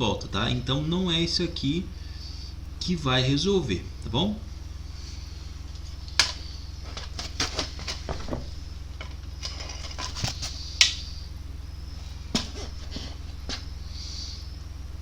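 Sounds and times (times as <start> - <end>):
steady low hum: 0.0 - 15.0
metal parts clinking: 9.0 - 10.6.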